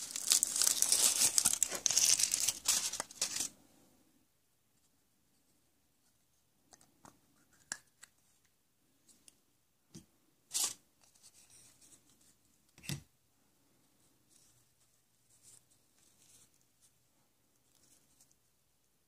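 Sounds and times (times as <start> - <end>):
packaging crinkling: 0.0 - 3.5
packaging rustles: 0.0 - 3.5.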